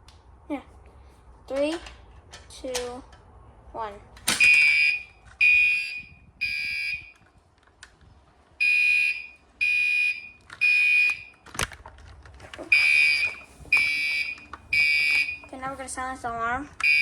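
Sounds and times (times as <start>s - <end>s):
fire alarm horn buzzing: 4.4s - 7.2s, 8.6s - 11.4s, 12.7s - 15.5s.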